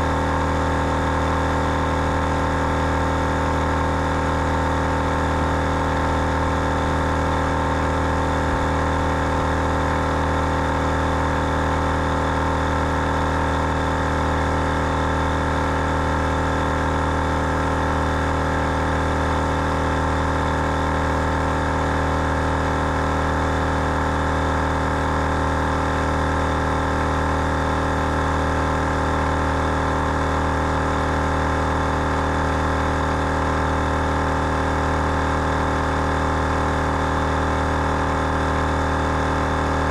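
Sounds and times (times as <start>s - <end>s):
air compressor motor hum: 0.0s - 39.9s.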